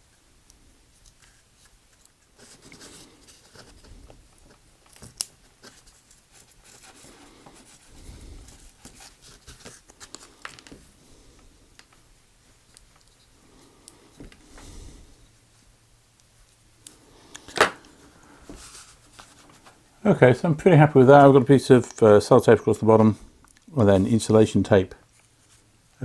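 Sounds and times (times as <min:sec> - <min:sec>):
tape rustling: 0:01.0 - 0:10.9, 0:17.3 - 0:19.8.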